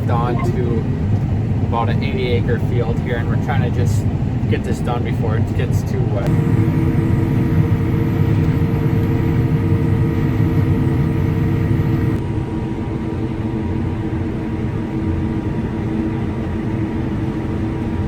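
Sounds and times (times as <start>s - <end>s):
thin constant whine: 0.0s - 3.3s, 6.2s - 12.2s
combine harvester engine drone: 0.0s - 18.0s.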